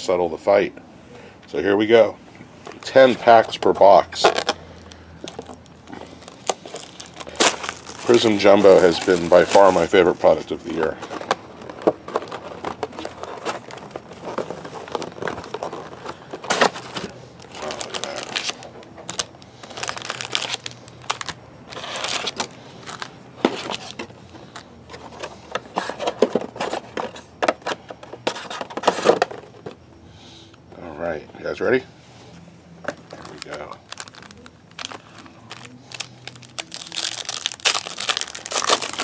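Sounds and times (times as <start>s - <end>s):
rustling and handling noises: 2.4s - 29.8s, 31.9s - 39.0s
foil wrappers crinkling and tearing: 2.8s - 25.1s, 33.0s - 39.0s.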